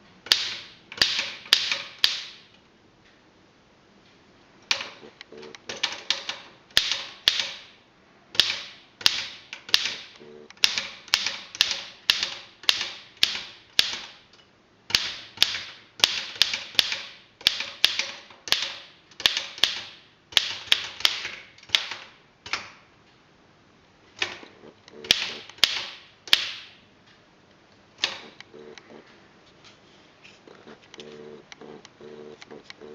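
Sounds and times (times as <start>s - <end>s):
manual typewriter keys clacking: 4.7s - 7.6s.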